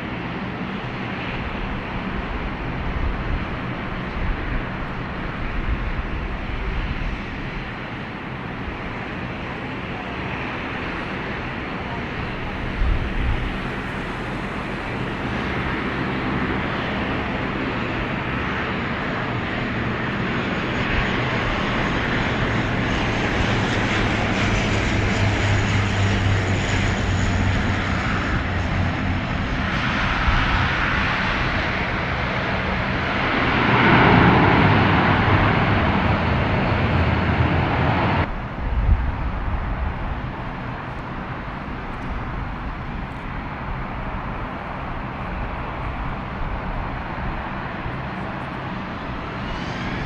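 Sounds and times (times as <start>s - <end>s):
aircraft engines passing: 0.0s - 50.0s.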